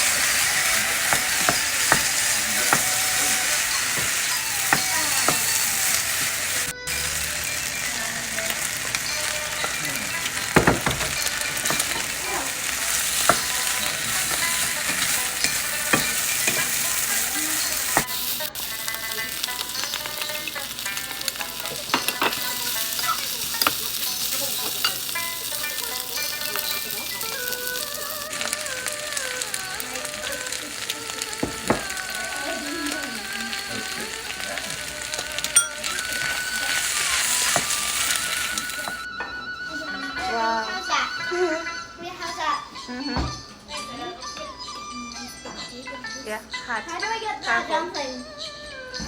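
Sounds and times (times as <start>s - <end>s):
spatula scraping a pan: 0.0s - 39.1s
food sizzling in hot oil: 0.0s - 39.2s.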